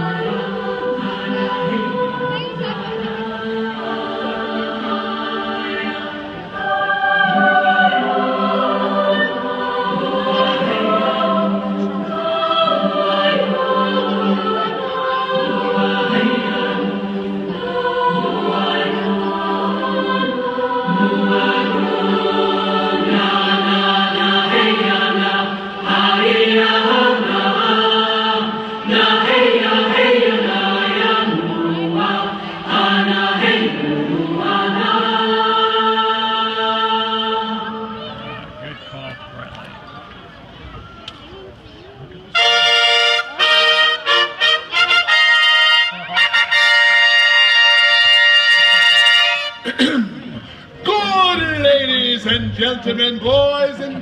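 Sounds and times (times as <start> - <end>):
choir singing held chords: 0.0 - 38.4, 42.3 - 54.0.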